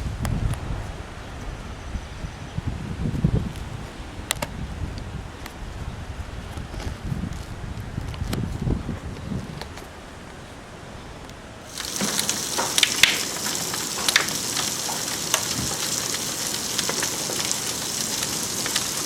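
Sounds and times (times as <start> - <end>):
rain pouring: 11.7 - 19.0
raindrops ticking on surfaces: 11.7 - 19.0.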